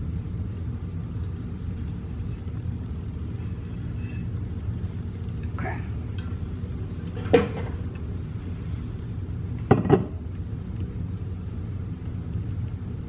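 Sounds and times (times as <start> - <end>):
steady low hum: 0.0 - 13.0
kitchenware knocking: 9.7 - 10.1.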